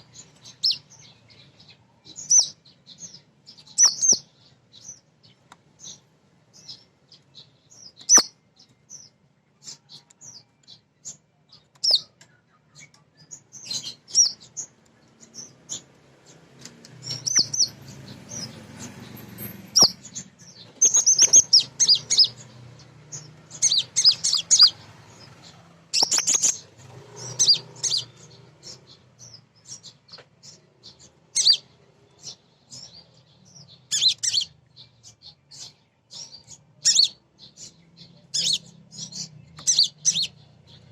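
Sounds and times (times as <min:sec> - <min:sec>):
bird chirping and twittering: 0:00.0 - 0:40.9
sharp bird clicks: 0:03.5 - 0:04.3, 0:07.9 - 0:08.4, 0:11.6 - 0:18.9, 0:19.7 - 0:22.5, 0:25.9 - 0:30.6.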